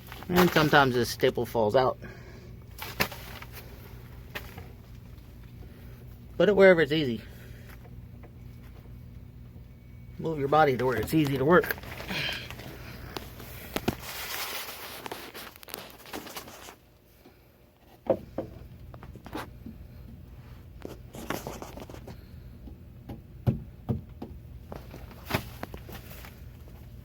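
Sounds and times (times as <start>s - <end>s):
scuffing and rustling movement: 0.0s - 1.6s, 2.7s - 5.6s, 10.4s - 16.9s, 24.6s - 27.0s.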